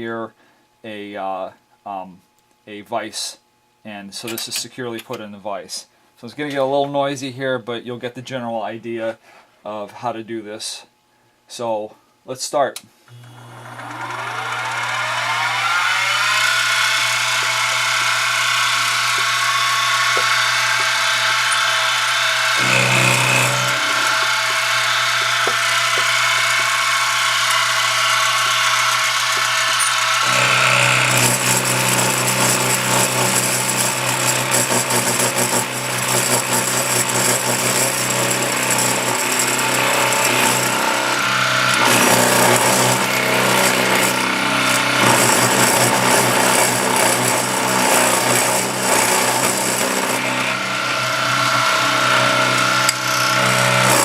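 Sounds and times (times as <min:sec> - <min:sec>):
cutter grinding metal: 0:13.1 - 0:54.0
milling spindle whine: 0:13.1 - 0:54.0.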